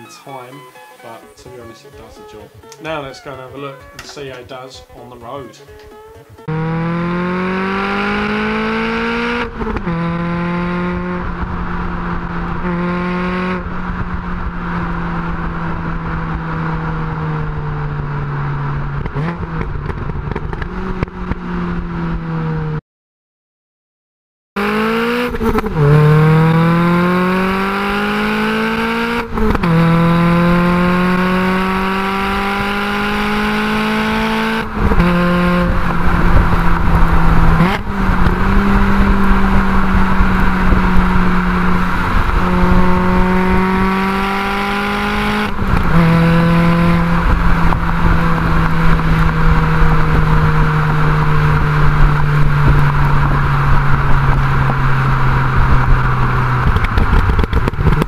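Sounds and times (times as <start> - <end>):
wind and road noise: 0.0 - 22.8, 24.6 - 58.0
car engine accelerating: 5.6 - 22.8, 24.6 - 58.0.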